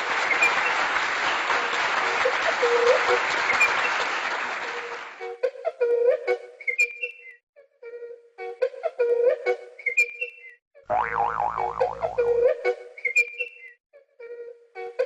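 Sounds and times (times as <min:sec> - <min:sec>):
applause: 0:00.0 - 0:05.4
music with woodwind notes: 0:05.3 - 0:07.4, 0:08.4 - 0:10.5.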